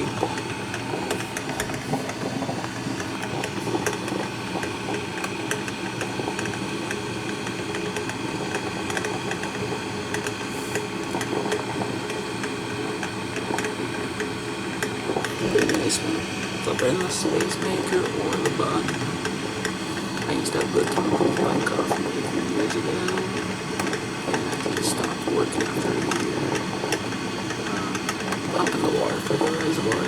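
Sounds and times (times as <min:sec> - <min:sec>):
machine hum: 0:00.0 - 0:30.0.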